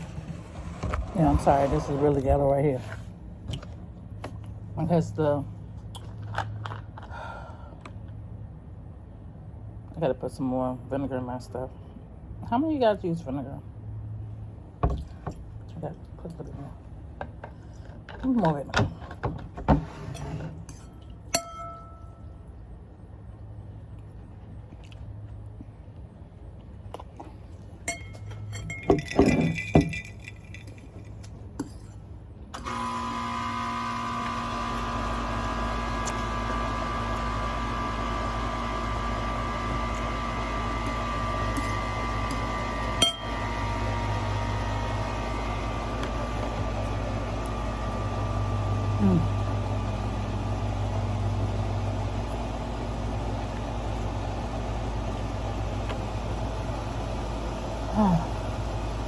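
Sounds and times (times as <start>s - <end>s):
glass clinking: 21.3s - 22.2s, 27.9s - 30.8s.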